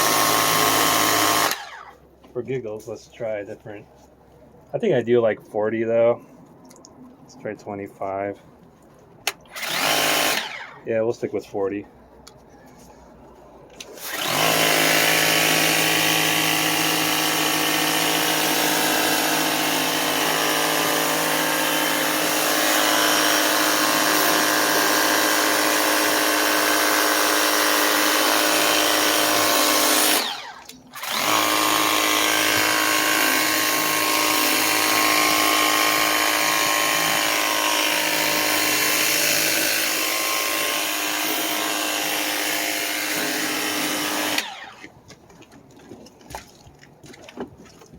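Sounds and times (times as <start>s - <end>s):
pump motor running: 0.0s - 1.9s, 13.9s - 47.9s.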